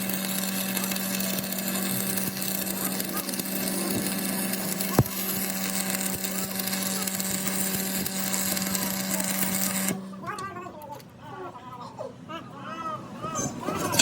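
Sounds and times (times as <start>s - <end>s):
steady machine hum: 0.0s - 10.3s
workshop noise: 0.0s - 11.0s
faint voices: 0.3s - 14.0s.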